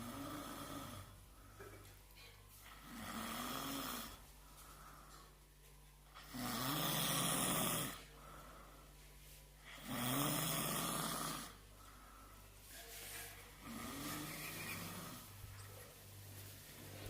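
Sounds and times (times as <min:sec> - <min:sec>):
person snoring loudly: 0:00.0 - 0:01.1, 0:02.8 - 0:04.2, 0:06.2 - 0:08.1, 0:09.8 - 0:11.6, 0:13.6 - 0:15.3.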